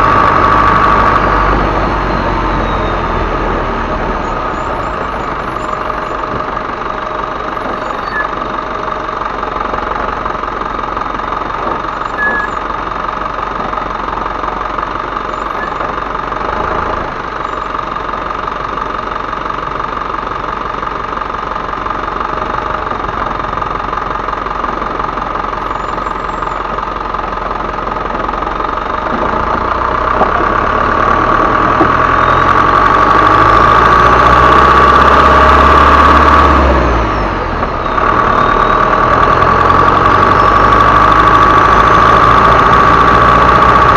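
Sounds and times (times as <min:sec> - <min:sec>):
diesel truck engine knocking: 0:00.0 - 0:43.9.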